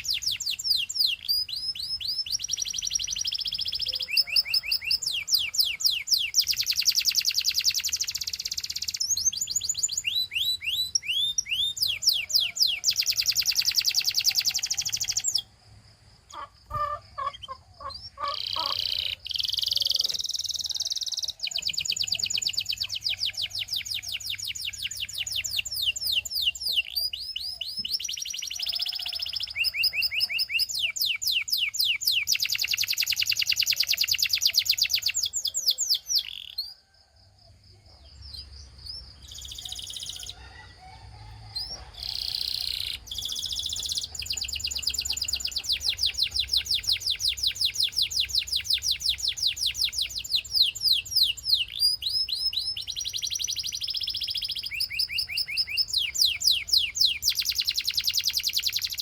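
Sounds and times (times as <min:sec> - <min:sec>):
canary singing trills: 0:00.0 - 0:37.0, 0:37.7 - 0:59.0.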